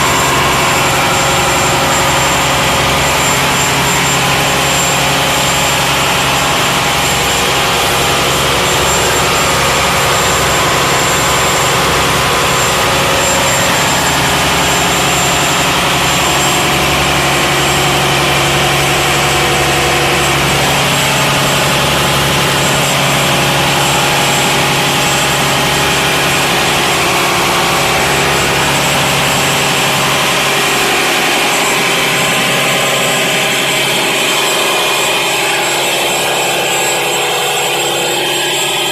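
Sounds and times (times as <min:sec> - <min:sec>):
marine engine running loudly: 0:00.0 - 0:38.9.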